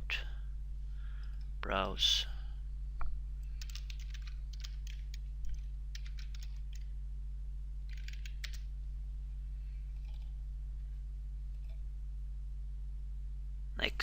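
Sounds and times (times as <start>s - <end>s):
steady low hum: 0.0s - 14.0s
keyboard typing: 3.4s - 6.9s, 7.9s - 8.7s, 10.0s - 10.3s.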